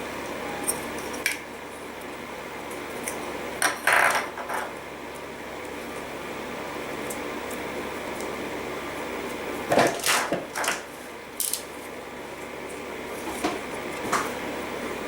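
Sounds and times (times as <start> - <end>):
steady background hum: 0.0 - 15.0.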